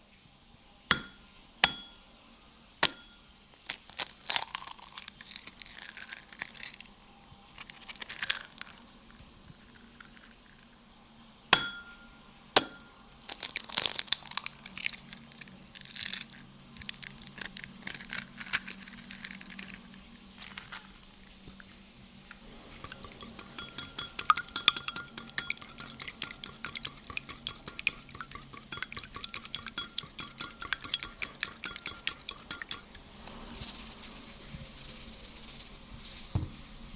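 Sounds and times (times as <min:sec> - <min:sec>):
egg tapping on bowl: 0:00.9 - 0:02.0, 0:02.8 - 0:03.2, 0:11.6 - 0:13.0, 0:22.8 - 0:33.0
fork beating eggs in bowl: 0:00.9 - 0:02.0, 0:02.8 - 0:03.2, 0:22.3 - 0:35.8
eggs clinking and splashing: 0:00.9 - 0:02.1, 0:02.8 - 0:06.9, 0:22.3 - 0:33.4.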